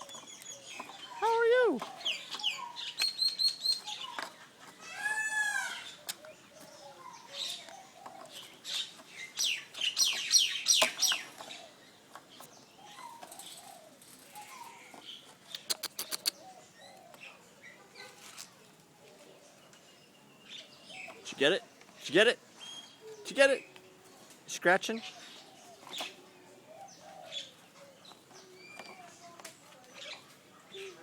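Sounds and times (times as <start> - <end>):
sharp clicks: 15.5 - 16.4.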